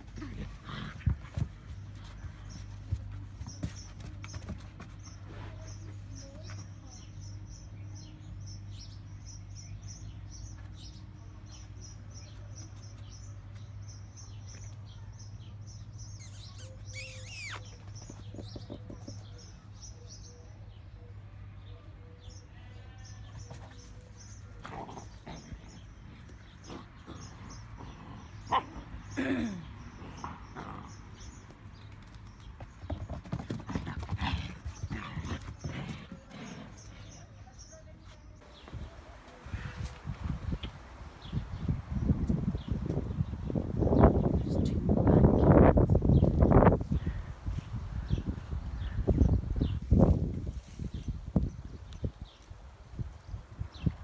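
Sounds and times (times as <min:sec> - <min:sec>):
faint high chirping: 0:15.8 - 0:18.4.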